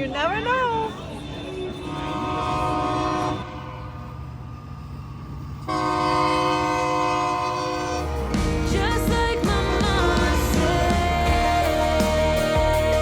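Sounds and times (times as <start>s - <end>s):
train air horn blasts: 1.4s - 4.0s, 5.7s - 8.2s.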